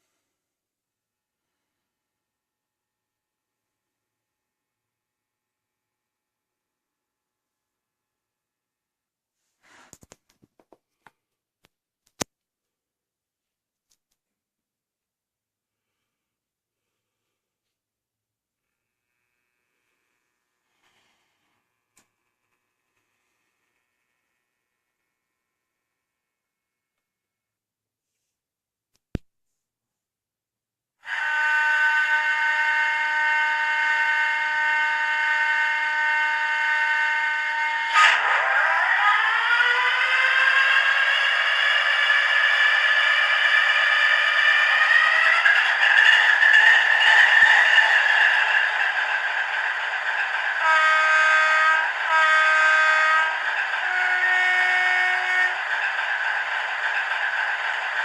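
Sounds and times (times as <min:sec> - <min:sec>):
two-tone model train horn: 0:31.0 - 0:47.7, 0:50.5 - 0:55.8
diesel locomotive sound from speaker: 0:31.1 - 0:58.0.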